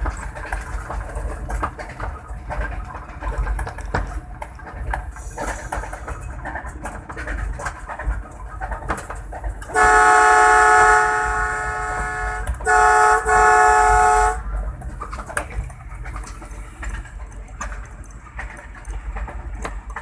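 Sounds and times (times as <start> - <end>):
locomotive engine rumble: 0.0 - 20.0
locomotive horn blasts: 9.7 - 14.6.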